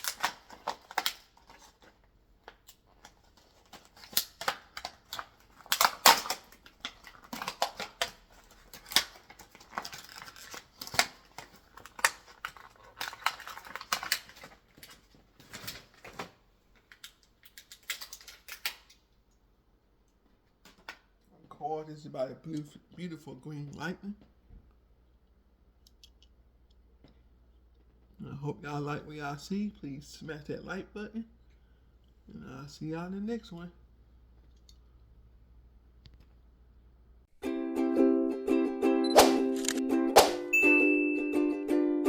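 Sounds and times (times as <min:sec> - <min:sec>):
packaging clicks and taps: 0:00.0 - 0:19.0
packaging crinkling: 0:00.0 - 0:19.2.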